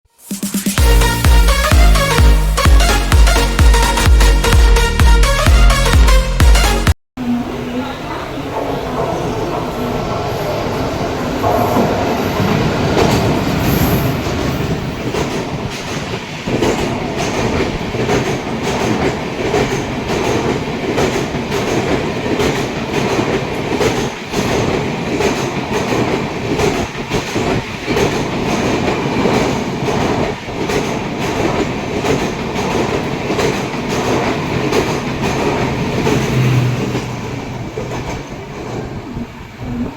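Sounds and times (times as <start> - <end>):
train rumble: 0.8 - 39.9
train wheels clattering over joints: 11.3 - 39.6.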